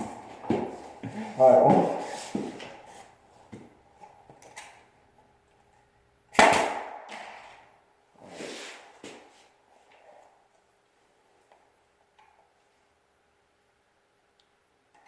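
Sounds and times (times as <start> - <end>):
nail gun firing: 6.3 - 7.4.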